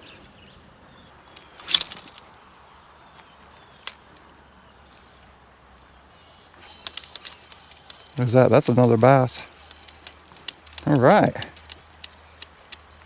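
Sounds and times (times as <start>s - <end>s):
faint steady hiss: 0.0s - 13.0s
reel clicks: 1.2s - 13.0s
fishing rod swish: 1.5s - 2.6s.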